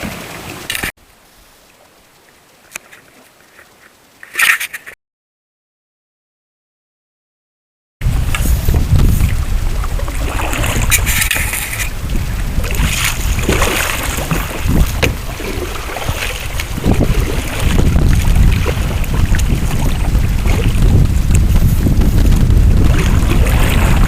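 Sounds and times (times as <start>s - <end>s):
water splashing around hull: 0.0s - 5.0s, 8.0s - 24.0s
wind buffeting microphone: 8.0s - 24.0s.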